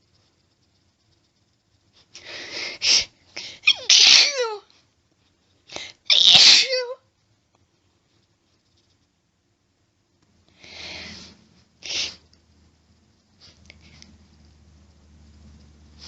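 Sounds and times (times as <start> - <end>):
woman sneezing: 3.6 - 4.6, 6.1 - 7.0.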